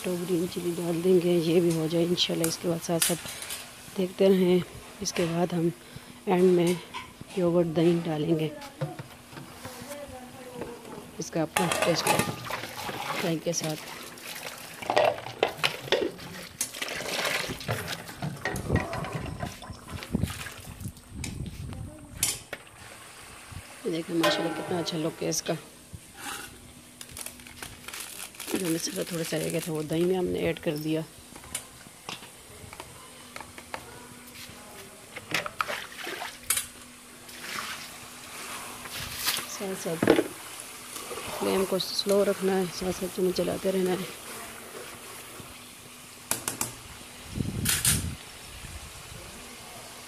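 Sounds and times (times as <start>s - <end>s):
food sizzling in a pan: 37.8s - 47.6s.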